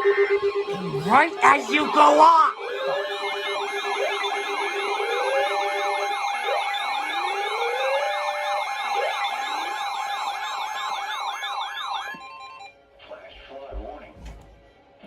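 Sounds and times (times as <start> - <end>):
siren rising wail: 0.8 - 11.8
siren fast yelp: 0.9 - 12.0.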